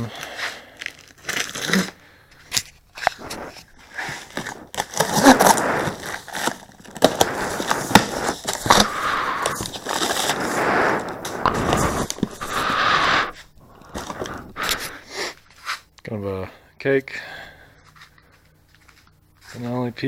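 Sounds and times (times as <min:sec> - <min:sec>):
cardboard boxes rustling: 0:03.0 - 0:12.7.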